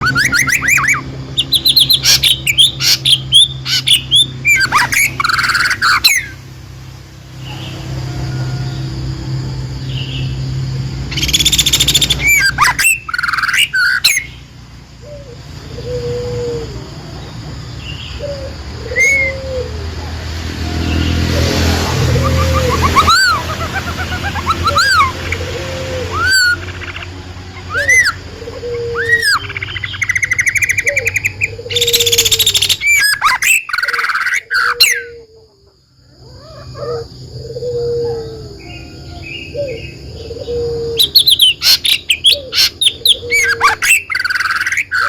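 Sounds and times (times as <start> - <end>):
steady low hum: 0.0 - 32.9
songbird chirping: 0.0 - 45.0.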